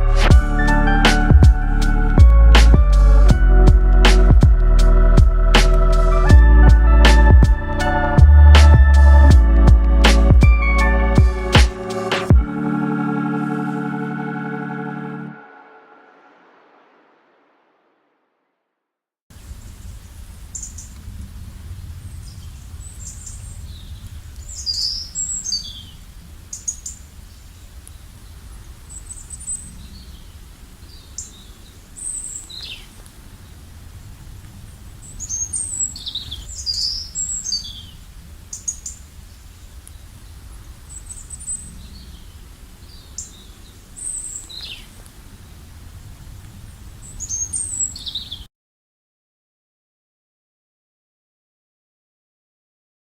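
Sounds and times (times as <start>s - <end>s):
low outdoor rumble: 0.0s - 11.7s.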